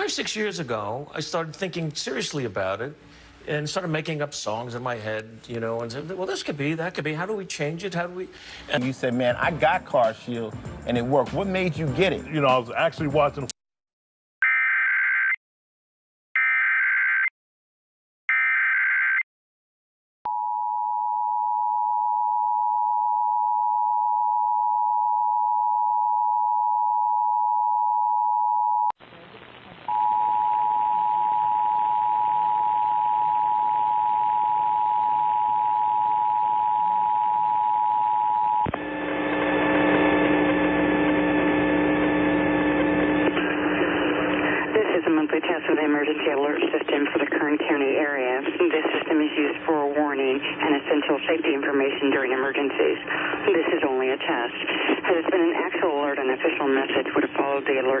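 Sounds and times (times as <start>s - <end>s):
steady buzzing hum: 38.7s - 44.8s.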